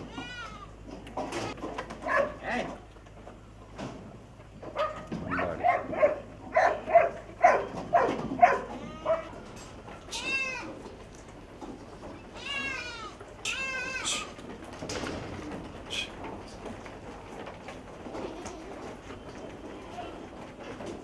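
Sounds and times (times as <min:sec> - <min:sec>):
goats bleating: 0:00.0 - 0:01.6, 0:08.5 - 0:11.0, 0:12.2 - 0:14.6, 0:18.0 - 0:19.0.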